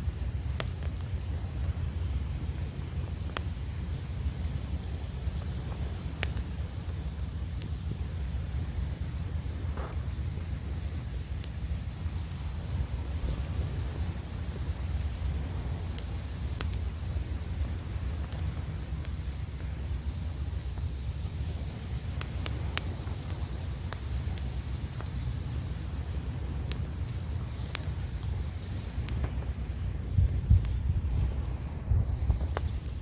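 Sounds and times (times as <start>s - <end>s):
campfire crackling and popping: 0.0s - 33.0s
wind on microphone: 9.2s - 19.9s, 25.8s - 33.0s.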